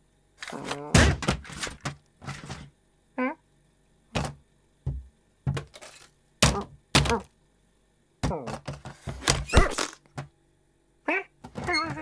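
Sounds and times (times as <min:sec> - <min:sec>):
cartoon thuds and knocks: 0:00.6 - 0:01.9, 0:04.2 - 0:05.8, 0:06.4 - 0:07.3, 0:08.2 - 0:10.3.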